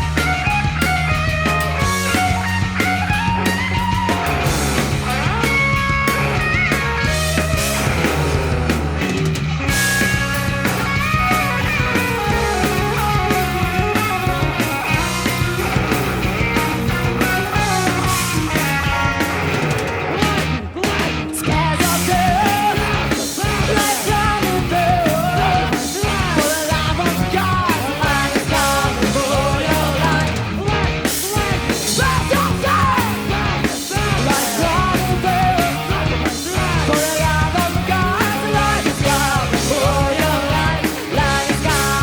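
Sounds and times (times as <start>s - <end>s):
live rock band playing: 0.0s - 42.0s
person singing: 20.1s - 42.0s.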